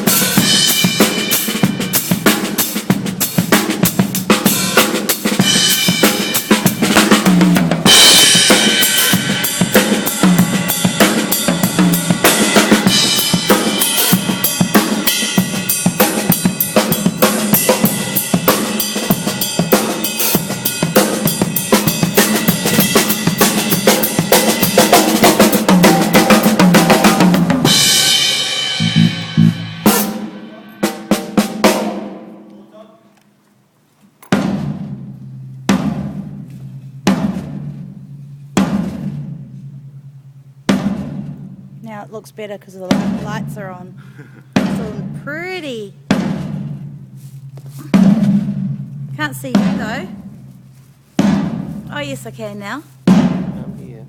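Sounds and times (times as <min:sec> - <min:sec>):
drum kit funky groove: 0:00.0 - 0:32.5, 0:34.1 - 0:54.0
low drum strokes: 0:05.3 - 0:32.5, 0:34.3 - 0:54.0
cymbals ringing: 0:07.8 - 0:24.8, 0:25.5 - 0:32.7.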